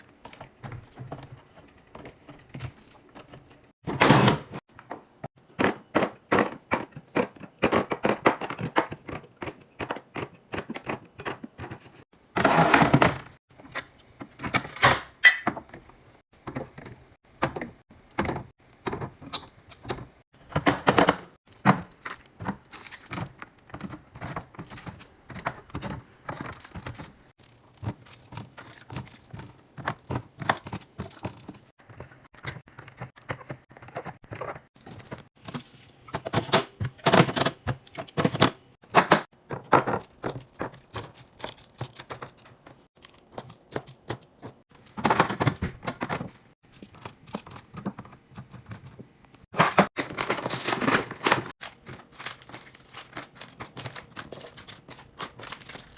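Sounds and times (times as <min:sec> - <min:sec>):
food packaging crinkling: 0:40.0 - 0:44.9, 0:50.0 - 0:55.9.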